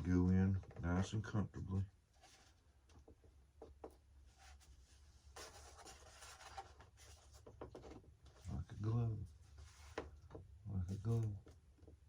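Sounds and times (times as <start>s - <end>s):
scratching on foam: 4.2s - 7.8s.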